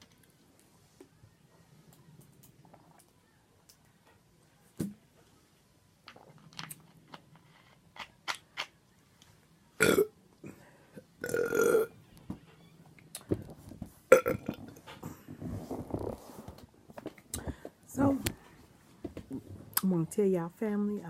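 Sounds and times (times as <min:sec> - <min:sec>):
woman burping: 0:09.8 - 0:10.1, 0:10.9 - 0:11.9, 0:14.1 - 0:14.8.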